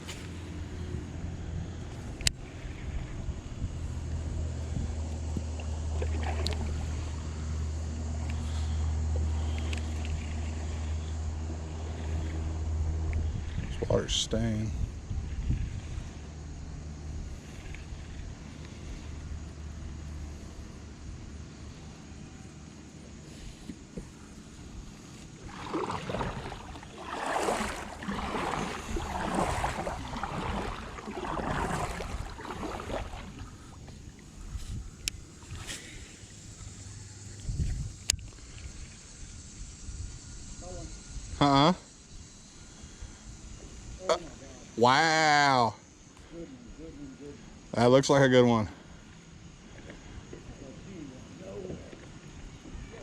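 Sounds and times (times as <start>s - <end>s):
paddle swishing through water: 0.0s - 13.9s, 14.8s - 39.0s
steady low motor hum: 0.0s - 53.0s.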